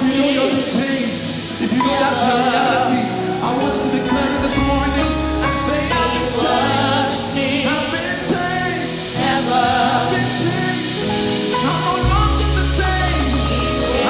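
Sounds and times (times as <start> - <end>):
choir singing gospel song: 0.0 - 14.0
instrumental backing: 0.0 - 14.0.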